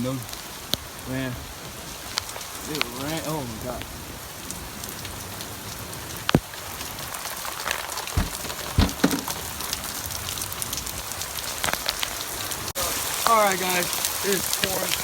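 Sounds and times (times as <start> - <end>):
heavy rain pouring: 0.0 - 15.0
hail knocking: 8.2 - 9.5.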